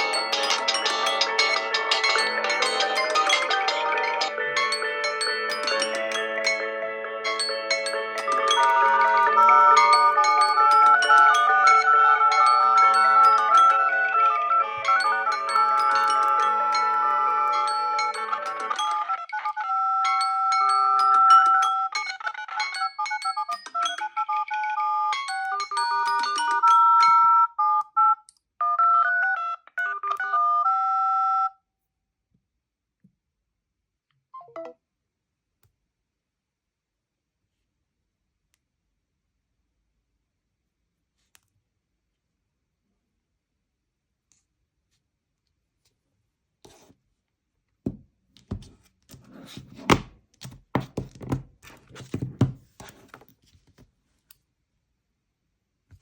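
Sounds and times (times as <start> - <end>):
smartphone ringtone melody: 0.0 - 31.5.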